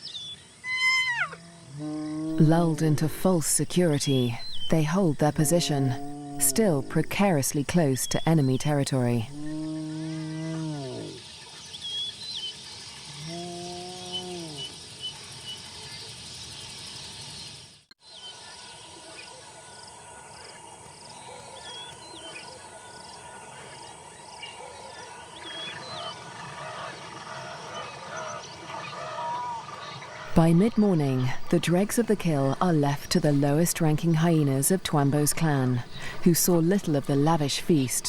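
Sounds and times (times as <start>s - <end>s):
small birds chirping: 2.3s - 9.8s, 27.4s - 38.0s
hyena low drawn-out call: 5.4s - 7.0s, 9.3s - 11.2s, 13.2s - 14.7s.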